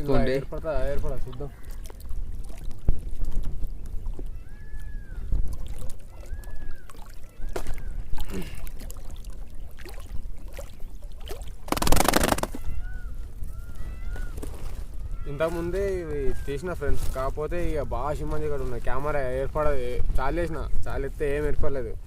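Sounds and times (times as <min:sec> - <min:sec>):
water sloshing and splashing: 0:00.0 - 0:12.7
whistled calls: 0:06.1 - 0:08.0, 0:11.7 - 0:14.4
loud splash: 0:11.6 - 0:12.6.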